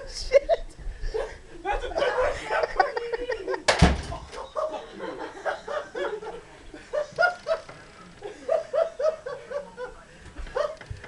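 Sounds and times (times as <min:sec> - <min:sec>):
laughter in pitched bursts: 0:04.6 - 0:10.0.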